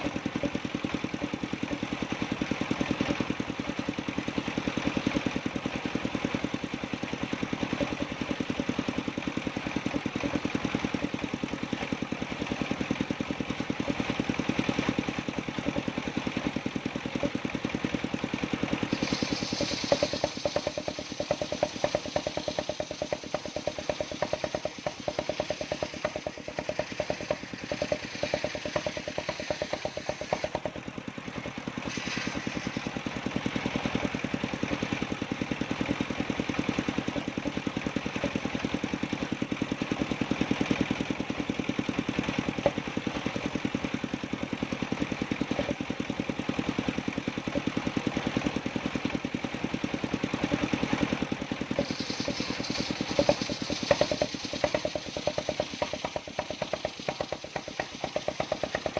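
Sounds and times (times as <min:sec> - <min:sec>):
engine chugging: 0:00.0 - 0:58.9
high hiss: 0:18.9 - 0:24.5, 0:51.8 - 0:58.9.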